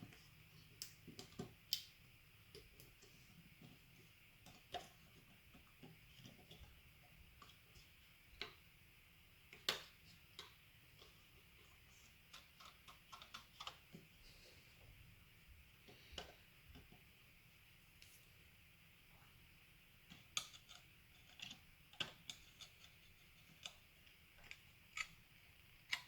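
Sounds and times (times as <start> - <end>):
small parts clicking and tapping: 12.2 - 14.1, 20.1 - 26.0.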